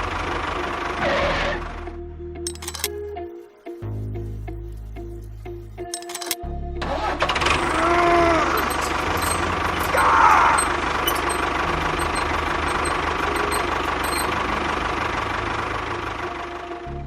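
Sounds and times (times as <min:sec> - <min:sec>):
small machine rattling hum: 0:02.5 - 0:03.1, 0:04.5 - 0:06.4, 0:07.4 - 0:16.8
short squeals: 0:07.5 - 0:14.4.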